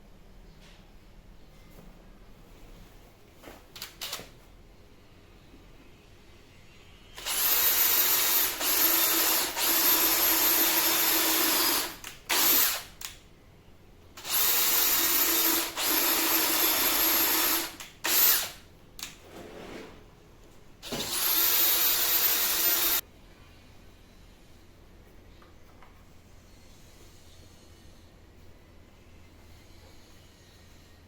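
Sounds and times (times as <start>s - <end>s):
power drill running: 7.2s - 12.9s, 14.2s - 18.6s, 20.8s - 23.0s.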